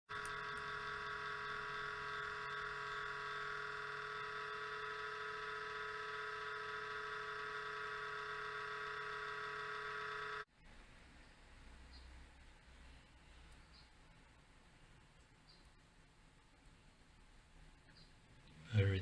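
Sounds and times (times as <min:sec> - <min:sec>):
laptop fan whining hum: 0:00.1 - 0:10.8.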